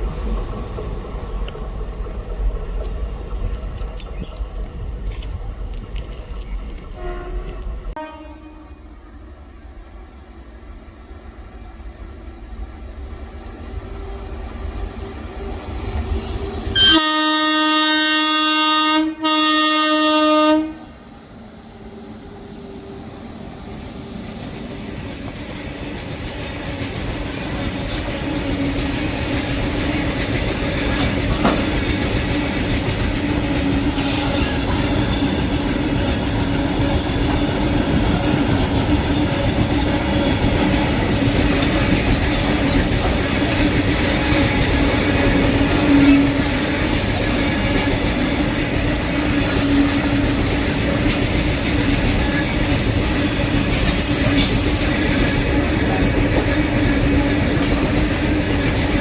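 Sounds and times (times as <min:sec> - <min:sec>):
train wheel clatter: 0:00.0 - 0:08.0, 0:24.0 - 0:59.0
freight train rumble: 0:00.0 - 0:59.0
locomotive horn blasts: 0:06.9 - 0:08.8, 0:16.8 - 0:20.9.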